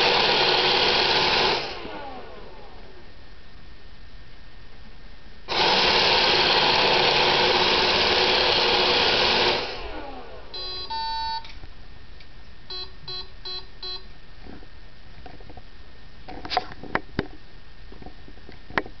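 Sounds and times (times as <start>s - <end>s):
robot vacuum motors running: 5.5s - 10.9s
electronic beeps: 10.5s - 11.5s, 12.7s - 14.1s.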